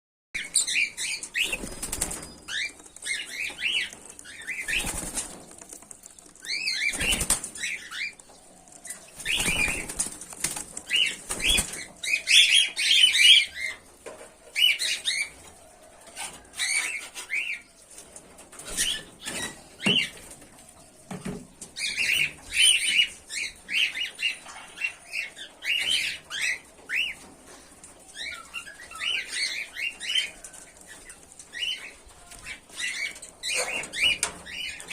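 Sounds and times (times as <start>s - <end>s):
cockatiels chirping: 0.4s - 5.2s
wings flapping: 1.2s - 8.1s, 8.8s - 12.2s.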